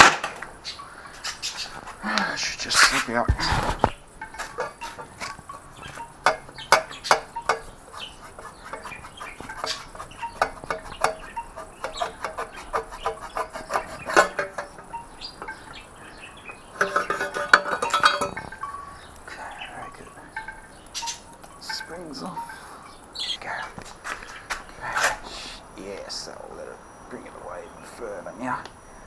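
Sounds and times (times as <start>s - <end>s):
metal scraping: 1.2s - 22.9s
hand tools clinking on metal: 1.3s - 23.3s.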